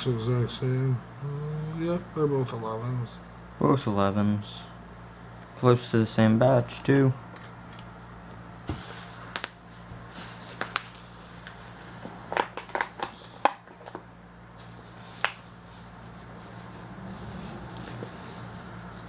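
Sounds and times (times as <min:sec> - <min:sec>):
steady low hum: 0:00.0 - 0:19.0
cardboard and plastic crackling: 0:08.7 - 0:14.0.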